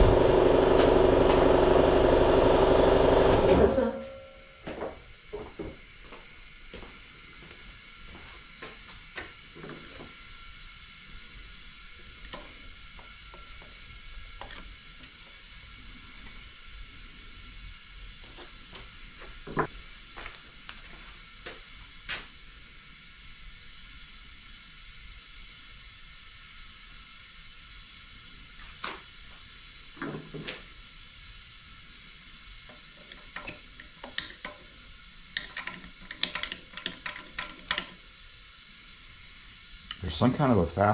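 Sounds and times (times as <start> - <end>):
hand tools clicking and tapping: 33.1 - 34.6, 35.4 - 38.0.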